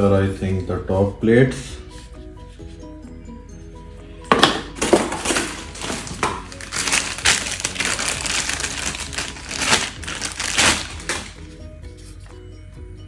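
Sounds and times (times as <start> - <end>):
faint background music: 0.0 - 13.0
packaging crinkling: 4.3 - 11.5.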